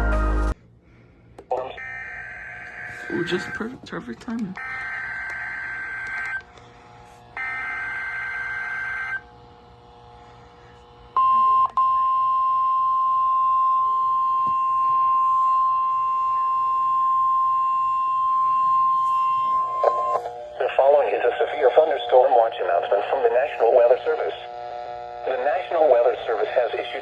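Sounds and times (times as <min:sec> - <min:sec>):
steady warning alarm tone: 0:01.5 - 0:09.5, 0:11.2 - 0:27.0
buzzy digital data bursts: 0:01.8 - 0:06.4.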